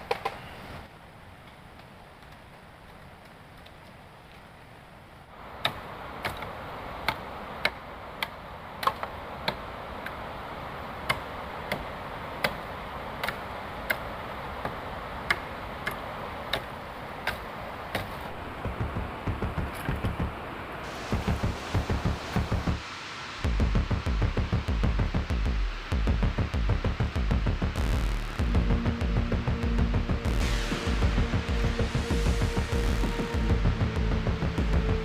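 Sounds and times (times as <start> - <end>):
steady hiss: 0.0 - 35.0
sharp knocks: 17.3 - 20.4
low pulsing beat: 18.4 - 22.8, 23.5 - 35.0.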